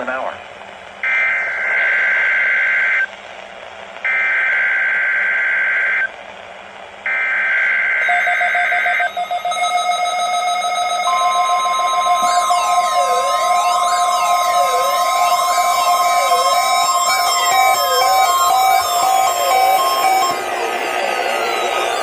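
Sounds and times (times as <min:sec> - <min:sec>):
electronic alarm tones: 0:07.1 - 0:22.0
single-pitch alert tone: 0:08.0 - 0:22.0
warbling digital data buzz: 0:08.0 - 0:22.0.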